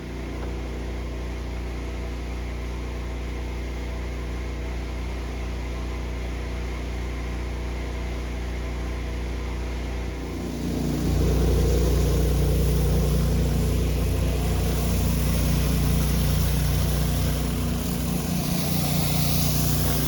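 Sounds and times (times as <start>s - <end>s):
engine running steadily: 9.0s - 20.0s
water spray hissing: 10.2s - 20.0s.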